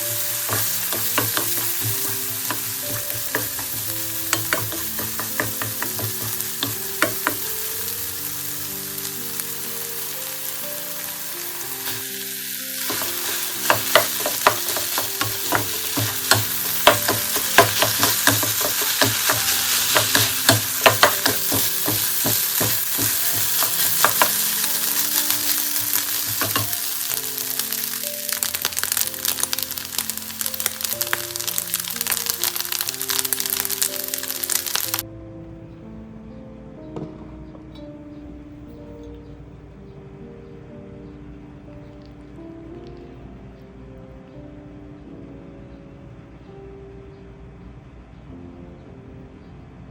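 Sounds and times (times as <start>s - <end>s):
fried rice sizzling in a pan: 0.0s - 35.0s
soft melodic background tune: 0.0s - 49.9s.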